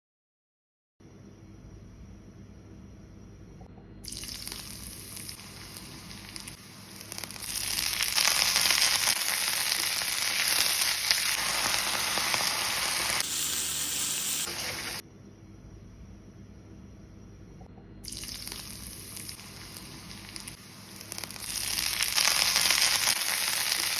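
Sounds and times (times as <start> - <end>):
food sizzling in a frying pan: 4.1 - 15.0, 18.1 - 23.9.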